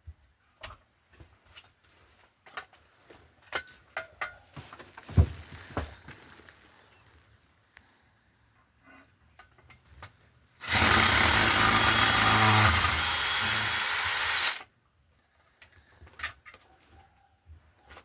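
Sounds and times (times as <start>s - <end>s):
electric drill running: 10.6s - 14.7s.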